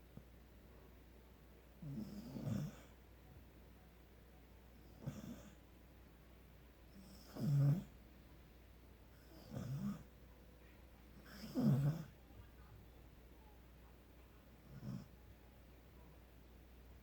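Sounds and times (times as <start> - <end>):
pet snoring: 1.8 - 3.0, 4.8 - 5.6, 6.9 - 8.0, 9.1 - 10.1, 11.2 - 12.2, 14.6 - 15.1.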